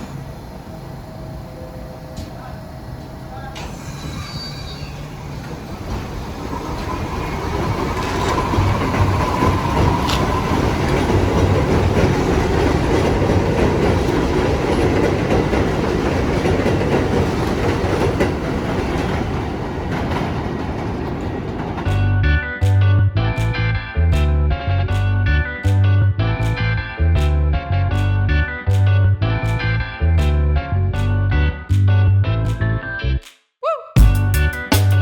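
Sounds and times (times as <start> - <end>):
faint whine: 0.0 - 5.9
subway train running on track: 0.0 - 22.2.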